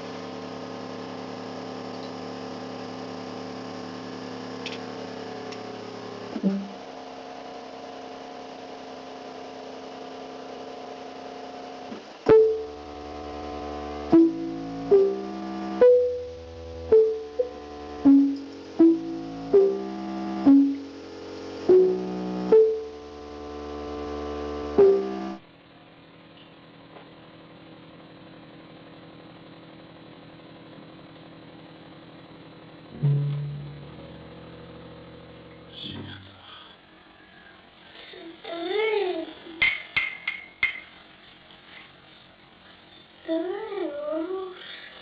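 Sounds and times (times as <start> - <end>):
faint hum: 0.0 - 25.5, 32.7 - 39.7
keyboard melody: 6.4 - 6.8, 12.3 - 25.4
steady held tone: 6.4 - 6.9, 12.3 - 25.4, 33.0 - 35.7.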